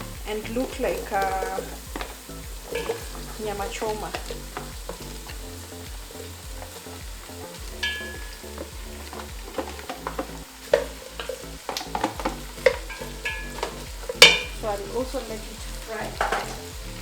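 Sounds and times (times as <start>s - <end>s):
beef sizzling in a pan: 0.0s - 17.0s
spoon knocking against pan: 1.3s - 5.5s, 6.5s - 14.6s, 16.1s - 16.7s.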